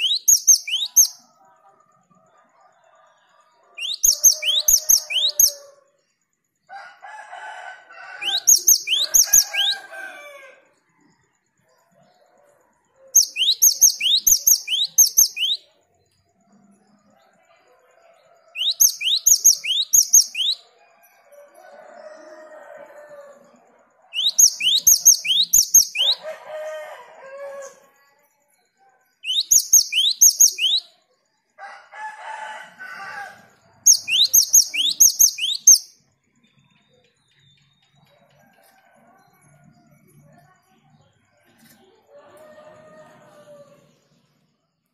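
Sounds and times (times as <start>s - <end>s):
bird singing rapid rising notes: 0.0s - 1.2s, 3.8s - 5.6s, 8.2s - 9.9s, 13.2s - 15.6s, 18.6s - 20.7s, 24.2s - 26.2s, 29.2s - 30.9s, 33.9s - 36.0s.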